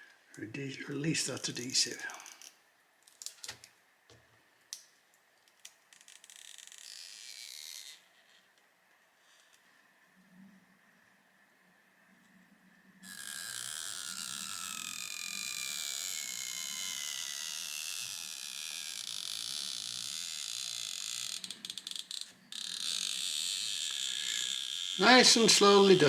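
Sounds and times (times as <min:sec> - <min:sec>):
adhesive strip peeling creak: 0:02.2 - 0:03.7, 0:05.5 - 0:08.6, 0:13.0 - 0:25.2.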